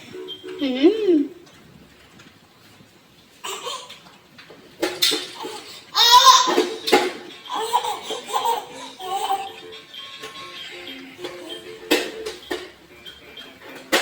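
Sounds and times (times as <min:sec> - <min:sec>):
baby laughing: 0:03.4 - 0:04.0, 0:05.4 - 0:09.6.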